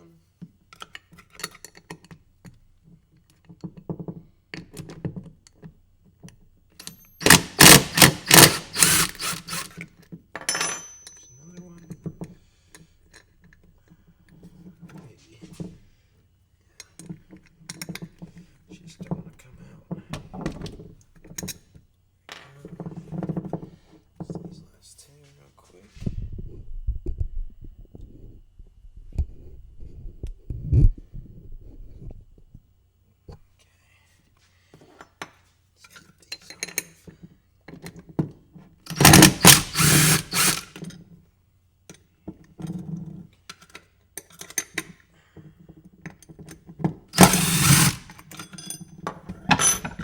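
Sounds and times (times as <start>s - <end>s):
power drill spinning nuts: 7.2s - 9.8s, 38.9s - 40.8s, 47.2s - 48.4s
clatter of parts handled: 38.9s - 40.9s, 47.2s - 50.0s.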